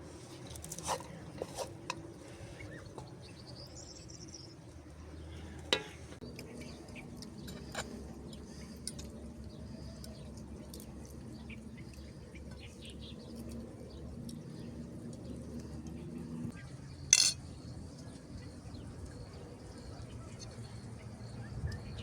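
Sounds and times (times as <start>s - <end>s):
outdoor background noise: 0.0s - 22.0s
dishes and cutlery clinking: 17.1s - 17.4s.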